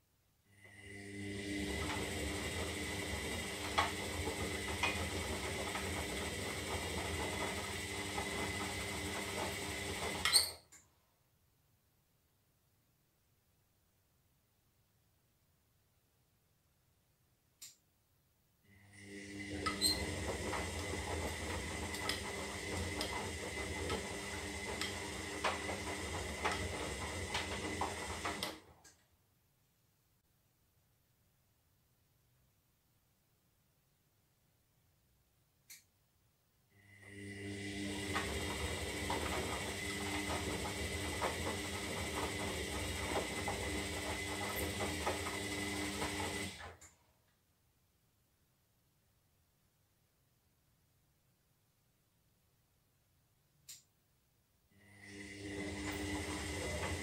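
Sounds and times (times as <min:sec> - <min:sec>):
washing machine motor humming: 0:00.6 - 0:10.5, 0:18.7 - 0:28.8, 0:36.9 - 0:46.8, 0:54.8 - 0:57.0.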